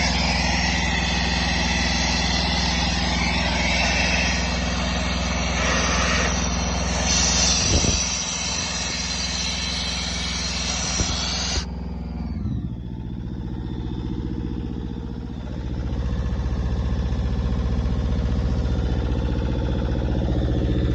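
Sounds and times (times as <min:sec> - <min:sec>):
compressed air hissing: 0:00.0 - 0:11.7
compressor engine running: 0:00.0 - 0:20.9.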